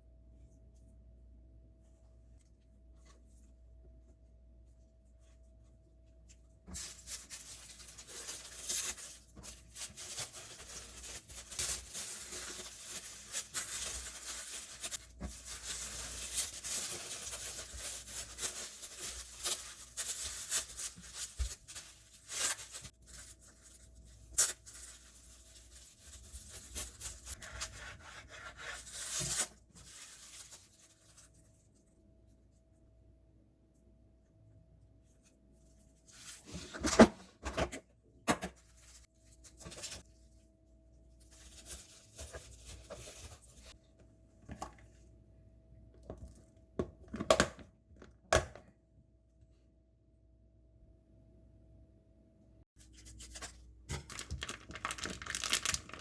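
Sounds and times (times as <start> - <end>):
scraping and rustling of food: 6.7 - 31.8, 41.2 - 43.8.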